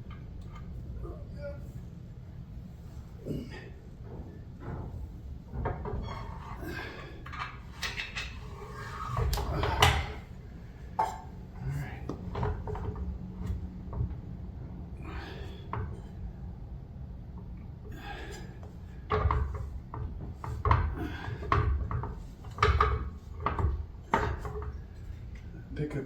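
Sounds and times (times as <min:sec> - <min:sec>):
metal knocks and clunks: 0:04.0 - 0:11.4, 0:19.0 - 0:25.0.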